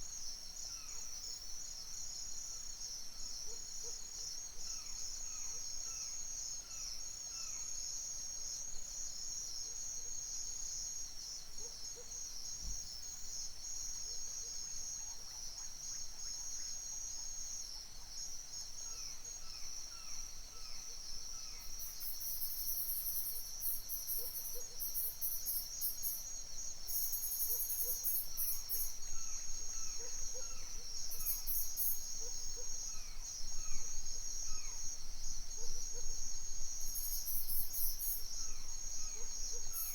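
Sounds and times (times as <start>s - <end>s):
high pulsing insect calls: 18.2s - 39.9s
insects trilling: 21.4s - 39.9s.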